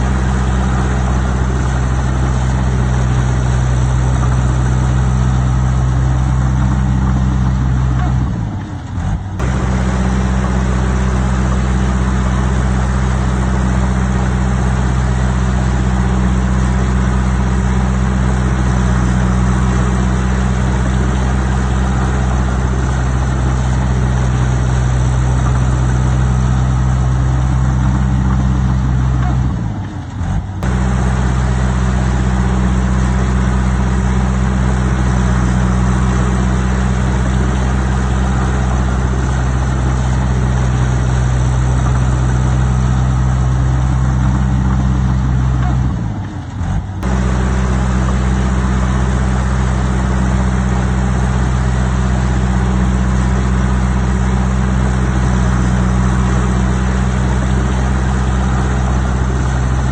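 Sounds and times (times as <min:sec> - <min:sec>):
heavy diesel engine running: 0:00.0 - 0:59.9.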